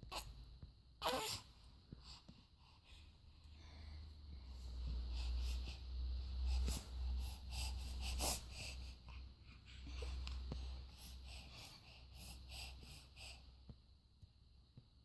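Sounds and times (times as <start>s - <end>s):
baby breathing wheezily and snuffling: 4.4s - 13.7s.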